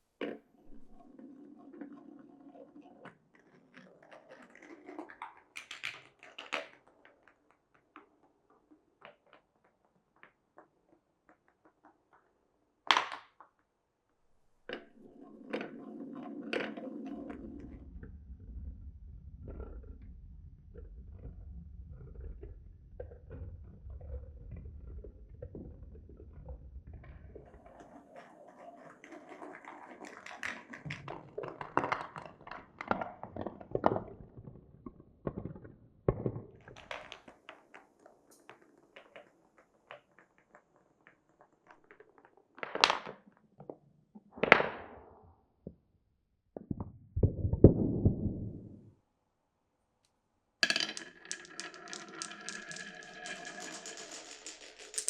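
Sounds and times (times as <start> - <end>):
marbles clicking and knocking: 0.6 - 1.1, 50.6 - 55.0
marbles rolling rumble: 0.7 - 2.2, 46.7 - 48.9, 50.6 - 55.0
clattering rattle: 50.7 - 55.0.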